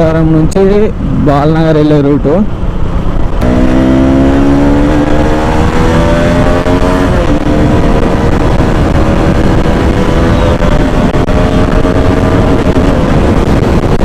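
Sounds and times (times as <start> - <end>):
wind on microphone: 3.0 - 14.0
motorcycle engine accelerating: 3.2 - 14.0.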